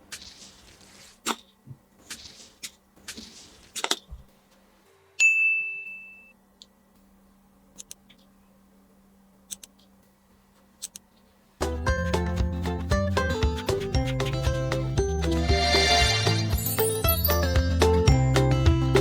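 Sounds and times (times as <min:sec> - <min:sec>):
bright ding: 0:05.2 - 0:06.4, 0:15.5 - 0:17.5.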